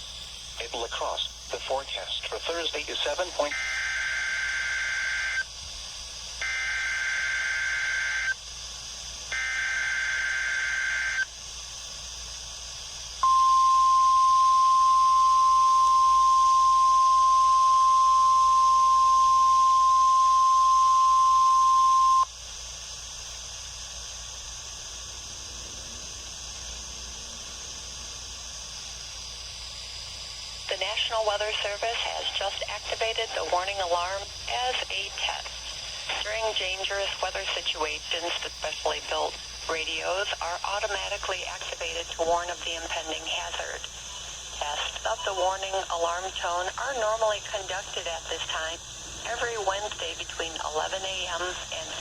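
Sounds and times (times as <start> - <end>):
radio hiss: 0.0 - 52.0
steady high alarm tone: 2.4 - 5.5, 6.4 - 8.4, 9.3 - 11.3, 13.2 - 22.3.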